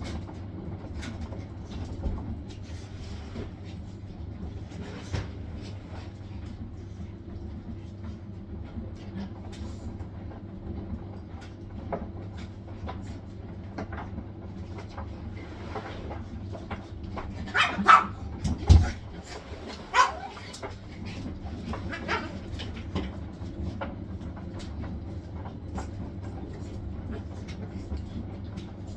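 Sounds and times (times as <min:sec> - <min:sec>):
washing machine spinning: 0:00.0 - 0:28.9.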